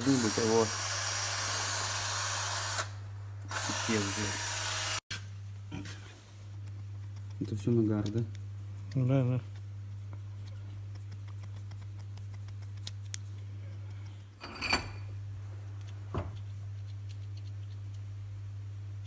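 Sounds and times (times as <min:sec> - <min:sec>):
steady low hum: 0:05.2 - 0:19.0.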